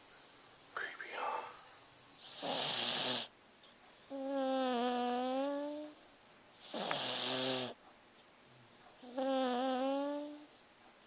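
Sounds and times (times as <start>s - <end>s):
dog snoring: 2.1s - 3.3s, 3.9s - 6.0s, 6.6s - 7.8s, 8.6s - 10.6s
whistle-like snoring tone: 6.6s - 7.8s.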